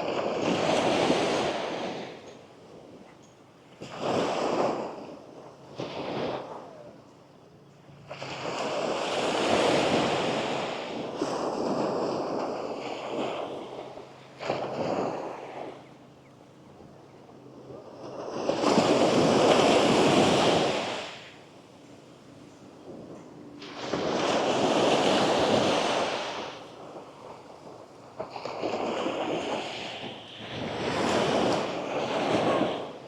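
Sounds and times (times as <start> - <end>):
sea waves washing onto beach: 0.0 - 3.0, 8.1 - 33.0.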